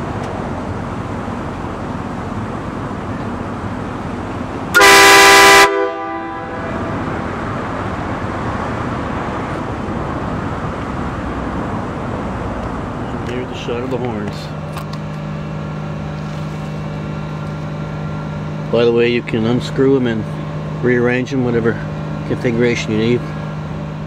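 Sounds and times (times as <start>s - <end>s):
steady background noise: 0.0s - 24.0s
loud air horn blast: 4.7s - 7.5s.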